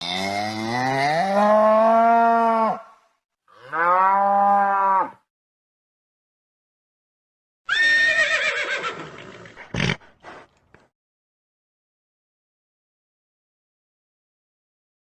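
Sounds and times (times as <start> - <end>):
cow mooing: 0.0 - 5.2.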